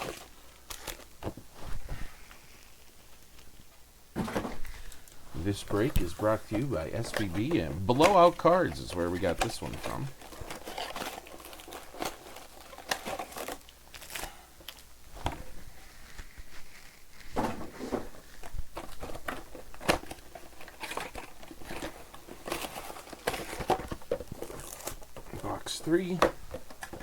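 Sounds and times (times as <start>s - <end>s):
packaging crinkling and tearing: 0.0s - 1.3s, 4.6s - 14.9s, 18.2s - 27.0s
rustles and handling clicks: 4.2s - 27.0s.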